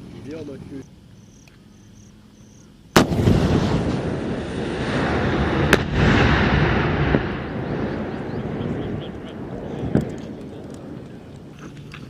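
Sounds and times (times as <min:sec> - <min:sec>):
long rolling rumble: 0:02.8 - 0:12.0
weapon firing loud blast: 0:03.0 - 0:10.1
sharp crack: 0:03.0 - 0:12.0.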